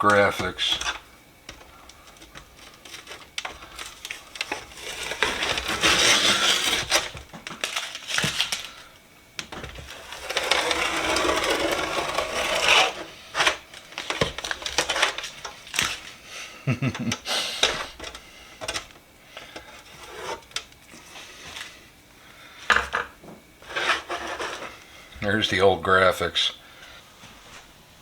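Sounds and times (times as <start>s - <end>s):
tape ripping off: 2.9s - 8.7s.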